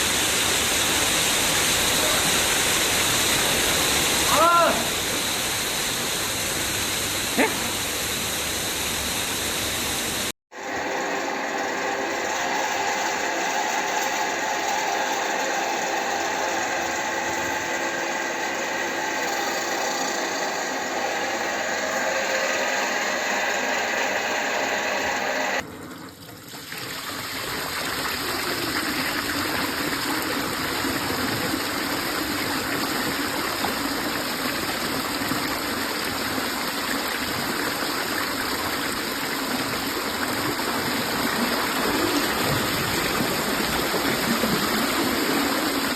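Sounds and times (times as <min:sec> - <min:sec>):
machine whining: 0:10.5 - 0:25.6
flowing water rushing: 0:28.1 - 0:45.9.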